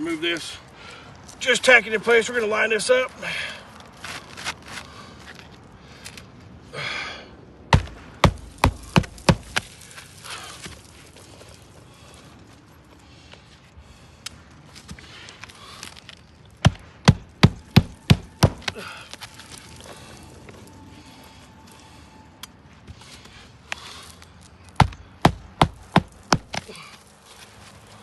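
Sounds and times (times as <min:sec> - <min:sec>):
hammer driving nails into shingle: 0:07.7 - 0:09.6, 0:16.6 - 0:18.9, 0:24.8 - 0:26.8.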